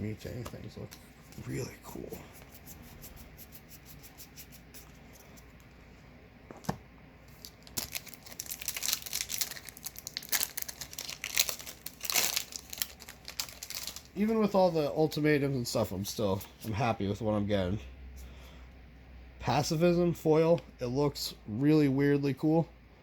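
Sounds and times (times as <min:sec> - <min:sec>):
foil wrapper tearing and crinkling: 0:07.3 - 0:14.2.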